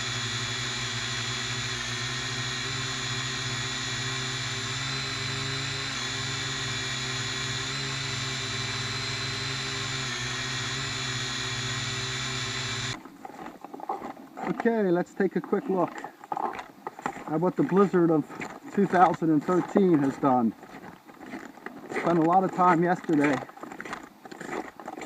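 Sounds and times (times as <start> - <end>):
drone rotors humming: 0.0 - 13.0.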